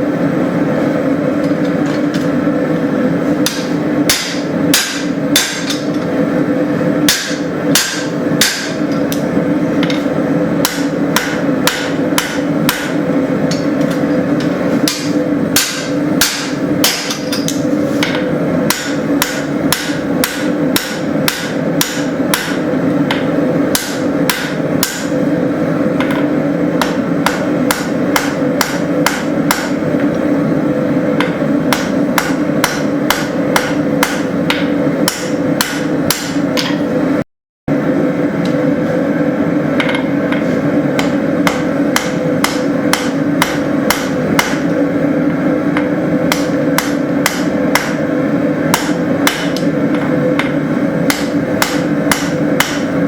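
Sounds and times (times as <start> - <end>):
hammer striking steel on anvil: 3.4 - 6.1, 7.0 - 25.2, 26.0 - 29.8, 31.2 - 36.9, 41.0 - 44.8, 45.8 - 48.0, 48.7 - 53.0.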